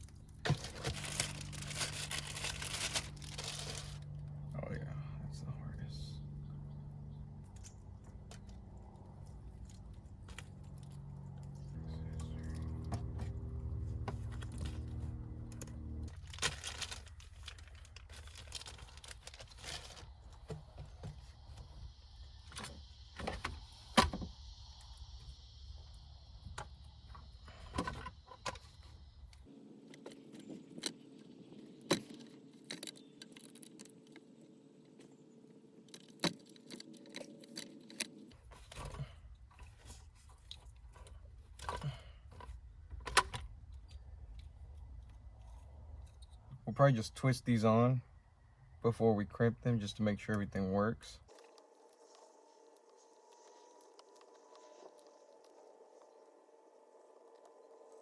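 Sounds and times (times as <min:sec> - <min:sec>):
small parts clicking and rattling: 0:27.7 - 0:34.6, 0:35.8 - 0:46.4
steady hum: 0:48.8 - 0:58.0.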